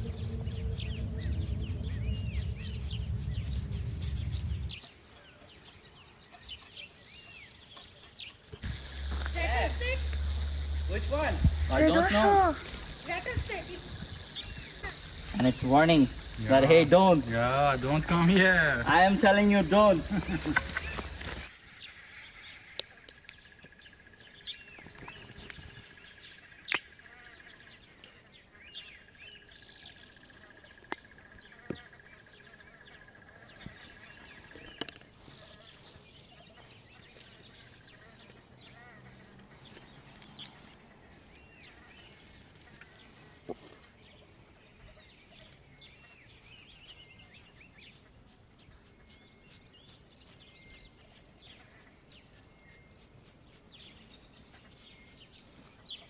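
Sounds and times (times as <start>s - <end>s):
bird chirps: 0.0s - 43.0s, 43.6s - 56.0s
steady high-pitched tone: 8.6s - 21.5s.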